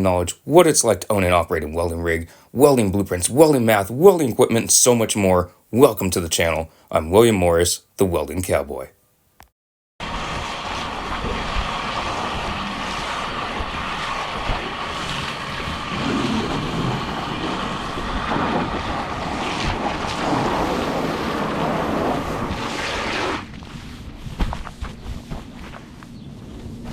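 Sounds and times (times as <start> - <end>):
water spraying against vehicle: 10.0 - 26.9.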